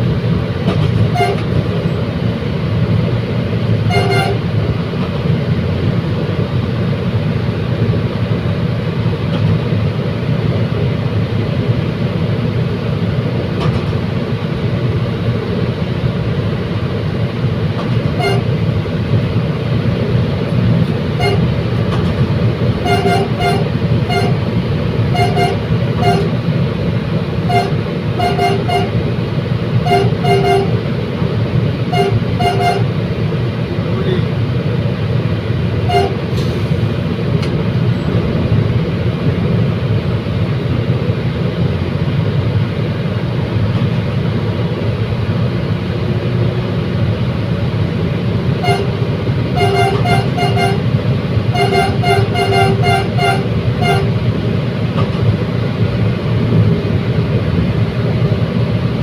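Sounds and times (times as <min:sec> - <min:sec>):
train rumbling: 0:00.0 - 0:59.0
train horn toots: 0:01.1 - 0:01.5, 0:03.9 - 0:04.5, 0:18.1 - 0:18.6, 0:21.2 - 0:21.6, 0:22.8 - 0:24.4, 0:25.1 - 0:26.4, 0:27.5 - 0:29.0, 0:29.8 - 0:30.8, 0:31.9 - 0:32.9, 0:35.8 - 0:36.4, 0:48.6 - 0:50.9, 0:51.5 - 0:54.2.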